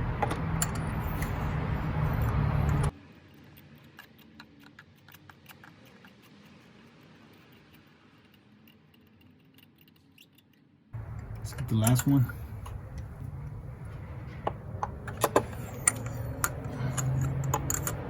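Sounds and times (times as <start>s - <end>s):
low steady hum: 10.9s - 18.0s
metallic clicks of spark plug socket: 14.8s - 18.0s.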